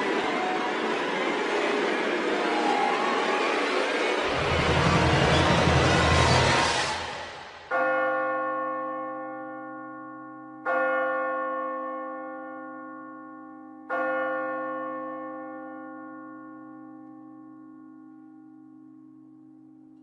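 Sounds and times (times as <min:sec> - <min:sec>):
loud rushing noise: 0:00.0 - 0:07.7
large bell tolling: 0:04.3 - 0:18.7.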